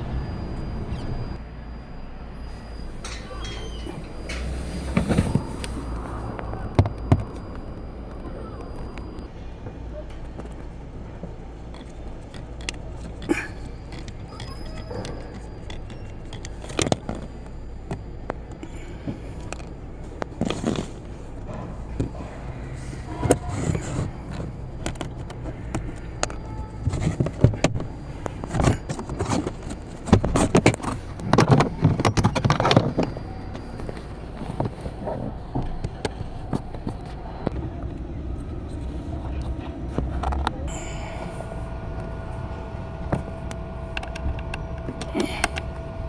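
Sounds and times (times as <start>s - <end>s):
steady low hum: 0.0s - 46.0s
scraping and rustling: 2.5s - 7.5s, 18.7s - 46.0s
clicks and knocks of car parts: 11.7s - 37.6s.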